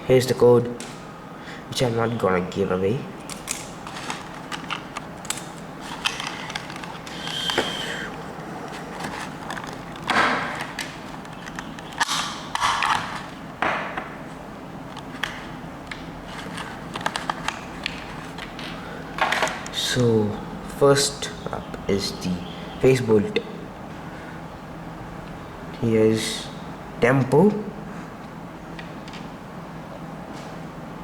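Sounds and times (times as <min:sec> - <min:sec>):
packaging rustling: 0:03.2 - 0:13.5, 0:14.8 - 0:19.6.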